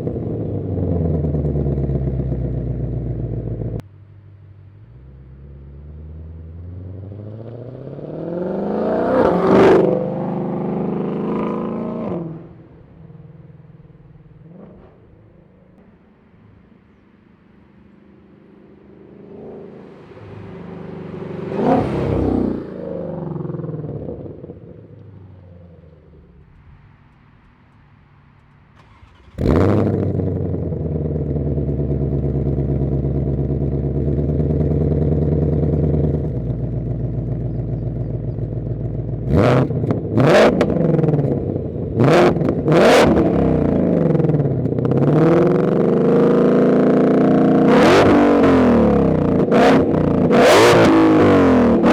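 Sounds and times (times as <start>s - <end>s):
car engine starting and idling: 0.0s - 51.9s
car driving past: 4.6s - 30.8s
engine revving: 4.9s - 13.0s, 14.0s - 15.9s, 18.2s - 26.6s, 28.8s - 51.9s.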